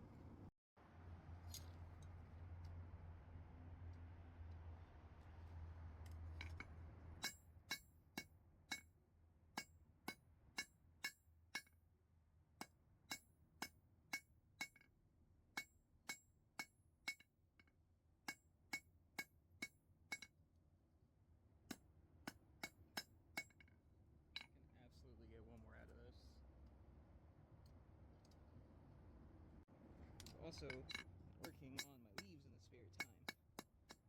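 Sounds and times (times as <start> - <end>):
hammer striking steel on anvil: 7.2 - 8.9, 9.6 - 11.8, 30.5 - 34.0.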